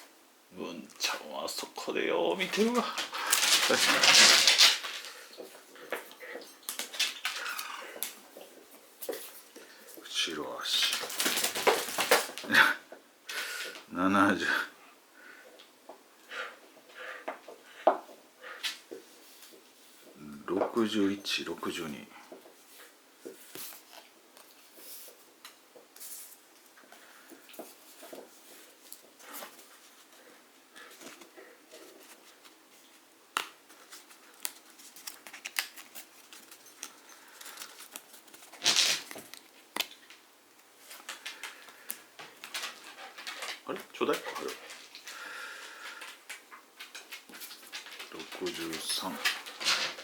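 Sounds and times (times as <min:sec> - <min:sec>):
cardboard pieces scraping: 0:02.4 - 0:05.4, 0:10.8 - 0:12.5, 0:33.7 - 0:40.0.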